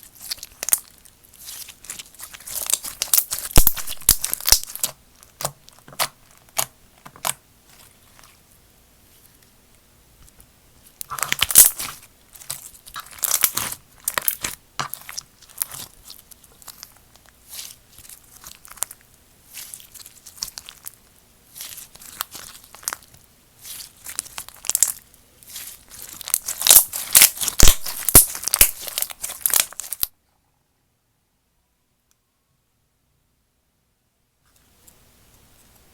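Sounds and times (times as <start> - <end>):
slime crackling and popping: 0.0 - 8.4, 10.9 - 30.1.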